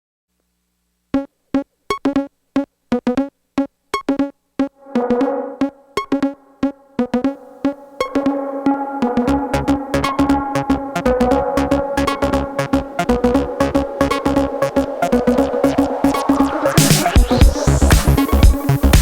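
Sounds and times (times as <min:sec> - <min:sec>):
held synth tones: 0:04.0 - 0:19.0
sharp synth stabs: 0:04.8 - 0:19.0.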